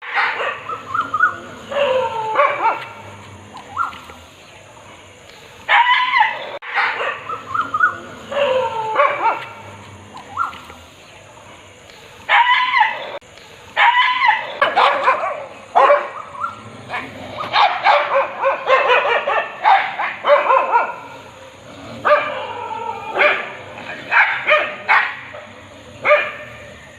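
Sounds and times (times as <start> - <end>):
dog barking: 0.0 - 4.0, 5.7 - 10.6, 12.3 - 13.2, 13.8 - 16.6, 17.4 - 21.2, 22.0 - 26.7.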